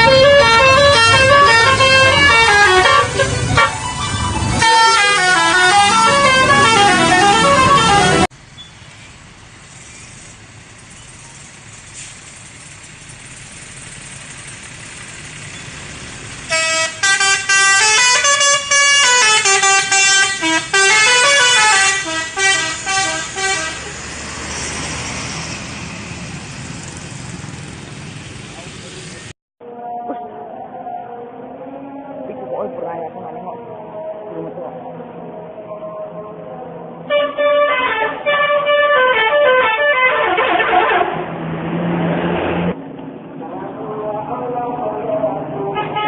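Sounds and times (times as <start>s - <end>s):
musical bus horn: 0.0s - 8.3s, 16.5s - 24.0s, 37.0s - 41.3s, 45.7s - 46.0s
street noise: 0.0s - 46.0s.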